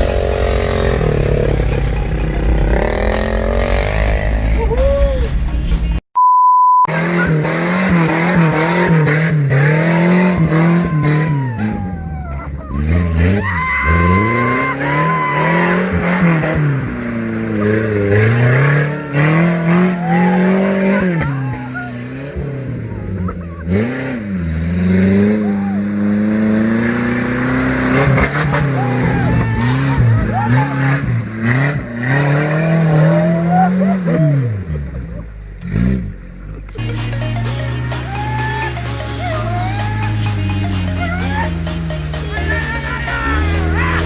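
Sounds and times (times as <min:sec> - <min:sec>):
vehicle engine revving: 0:00.0 - 0:06.0, 0:06.9 - 0:44.0
high steady beep: 0:06.2 - 0:06.9.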